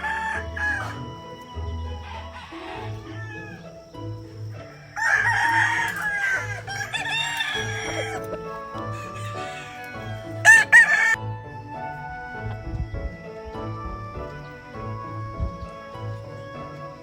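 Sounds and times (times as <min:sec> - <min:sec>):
background music: 0:00.0 - 0:17.0
roosters crowing: 0:00.0 - 0:17.0.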